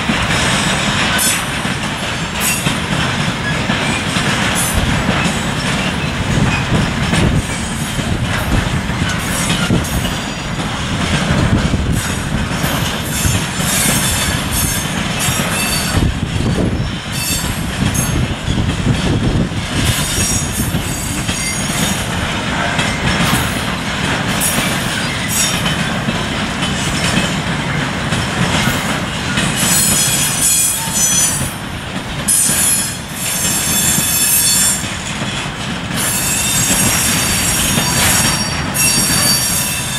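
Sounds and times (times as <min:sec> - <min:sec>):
train wheels rumbling on rail: 0:00.0 - 0:39.9
high-pitched wheel squeal: 0:37.4 - 0:39.9.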